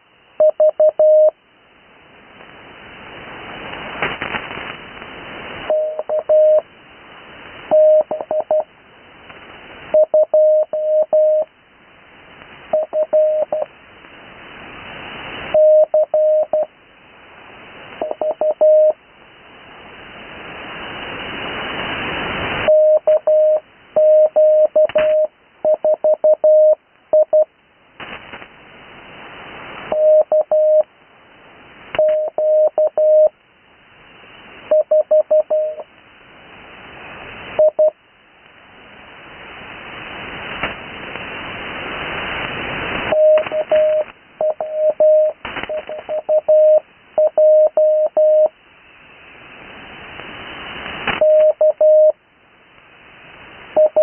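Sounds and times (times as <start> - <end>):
radio background hiss: 0.0 - 54.0
morse code tone: 0.4 - 1.4, 5.7 - 6.6, 7.7 - 8.7, 9.9 - 11.5, 12.7 - 13.7, 15.5 - 16.7, 18.0 - 19.0, 22.7 - 27.5, 29.9 - 30.9, 32.0 - 33.3, 34.7 - 35.8, 37.6 - 37.9, 43.1 - 48.5, 51.2 - 52.2, 53.8 - 54.0.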